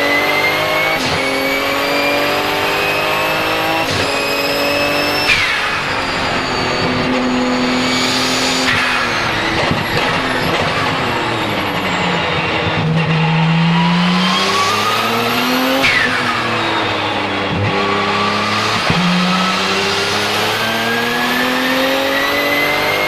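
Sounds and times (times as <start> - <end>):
race car engine pulling hard: 0.0 - 23.0
turbo blow-off rush: 0.0 - 23.0
turbo whistling: 2.8 - 13.5.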